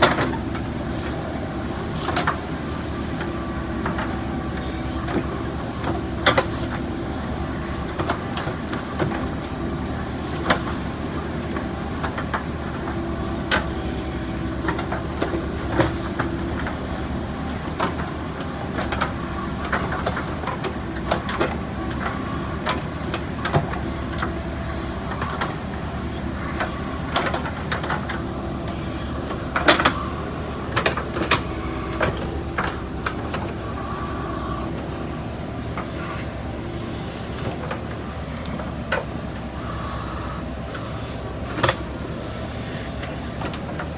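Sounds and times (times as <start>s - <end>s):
diesel engine running: 0.0s - 43.9s.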